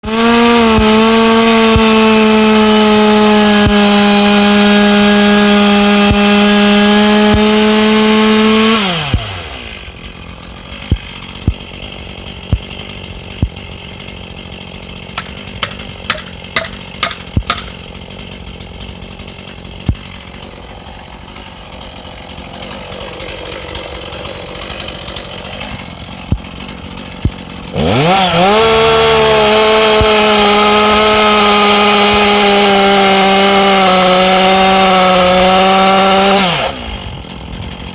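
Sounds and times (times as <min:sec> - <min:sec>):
chainsaw revving and idling: 0:00.0 - 0:37.9
sharp clicks and knocks: 0:10.8 - 0:11.7, 0:15.1 - 0:17.8, 0:25.6 - 0:26.6.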